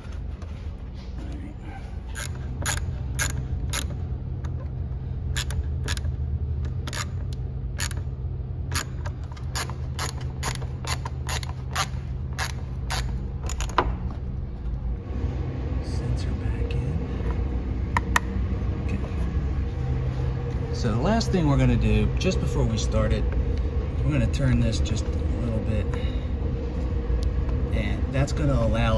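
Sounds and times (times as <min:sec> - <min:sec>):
steady low hum: 0:00.0 - 0:28.9
hand ratchet clicking: 0:02.2 - 0:04.0, 0:05.3 - 0:08.1, 0:08.7 - 0:13.8.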